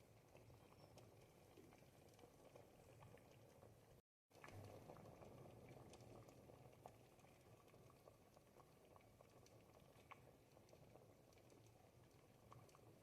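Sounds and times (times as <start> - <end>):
soup bubbling: 0.0 - 13.0.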